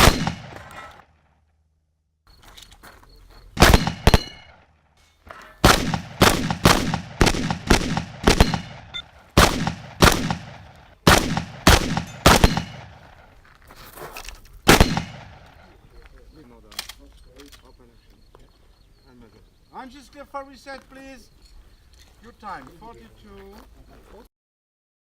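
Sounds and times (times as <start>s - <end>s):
shotgun shots: 0.0s - 1.0s, 3.6s - 4.7s, 5.6s - 13.3s, 14.6s - 15.7s.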